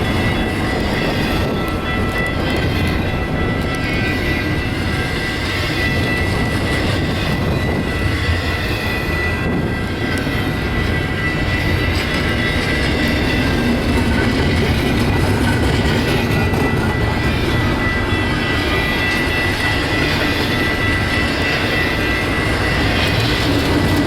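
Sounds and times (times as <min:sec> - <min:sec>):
train wheels rumbling on rails: 0:00.0 - 0:24.0.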